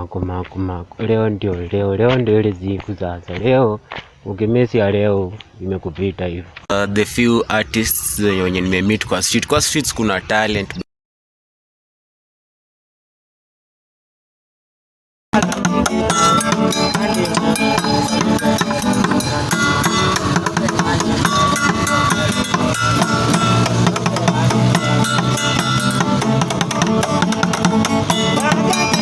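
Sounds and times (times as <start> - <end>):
music with drums and percussion: 15.4 - 29.0.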